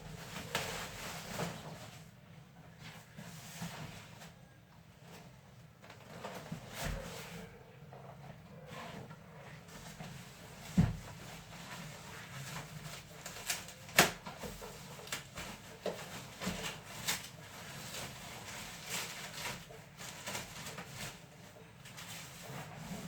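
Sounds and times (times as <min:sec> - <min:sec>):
rustling of packaging: 0:09.5 - 0:23.0.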